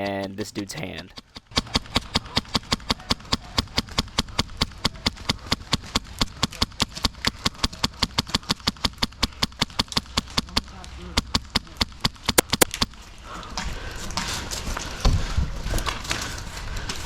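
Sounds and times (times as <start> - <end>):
airsoft gun firing: 1.5 - 10.6.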